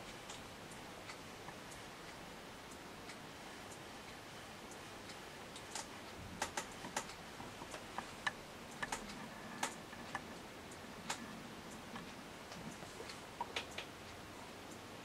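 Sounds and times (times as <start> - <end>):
mantel clock ticking: 0.0 - 15.0
sharp clicks: 5.5 - 10.3, 11.0 - 14.0.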